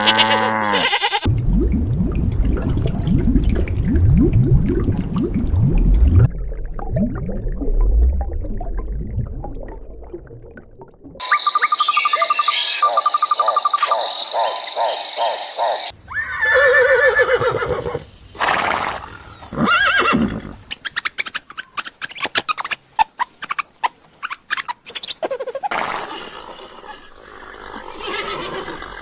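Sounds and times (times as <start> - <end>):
horse whinnying: 0.0 - 1.3, 16.1 - 20.6, 26.9 - 29.0
horse snorting: 25.7 - 29.0.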